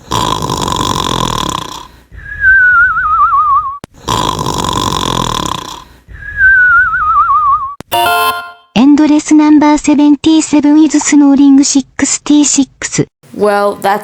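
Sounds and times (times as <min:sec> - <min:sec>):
cartoon snoring with whistle: 0:00.0 - 0:07.8.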